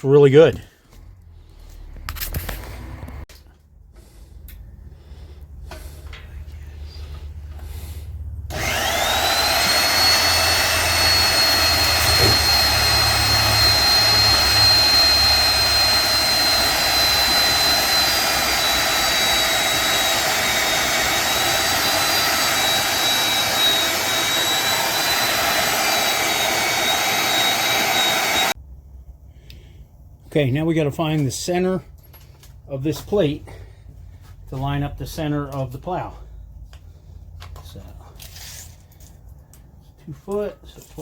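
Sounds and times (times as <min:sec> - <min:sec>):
angle grinder whining: 0:06.9 - 0:28.6.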